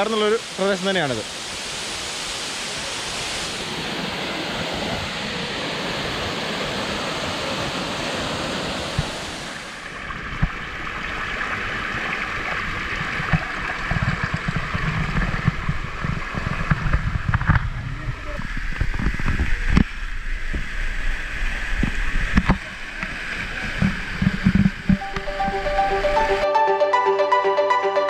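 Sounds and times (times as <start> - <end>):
waterfall rushing: 0.0 - 14.1, 22.8 - 28.0.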